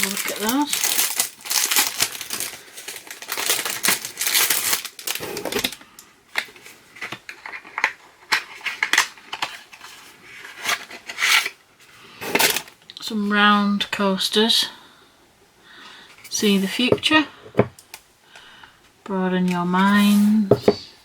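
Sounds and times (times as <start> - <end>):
packaging crinkling and rustling: 0.0 - 11.6, 12.2 - 12.8.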